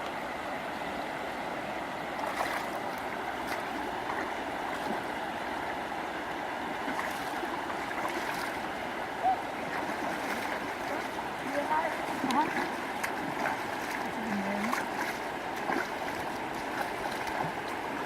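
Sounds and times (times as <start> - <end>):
shallow water sloshing: 2.2 - 5.2, 6.8 - 8.7, 9.6 - 18.0
small splashes and clicks: 9.7 - 17.8.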